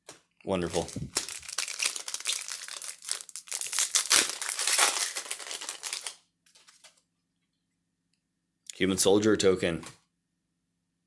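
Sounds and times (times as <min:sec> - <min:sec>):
card pack crinkling and rustling: 0:00.6 - 0:07.0.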